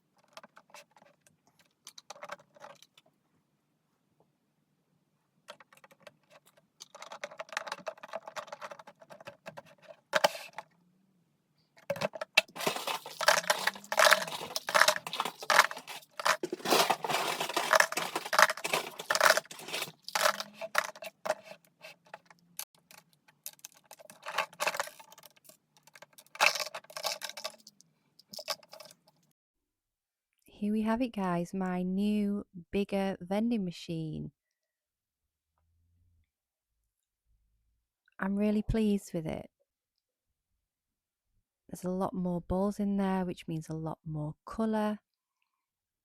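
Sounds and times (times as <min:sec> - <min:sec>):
plastic pieces rattling: 0:00.2 - 0:03.0, 0:05.5 - 0:10.6, 0:11.8 - 0:29.2.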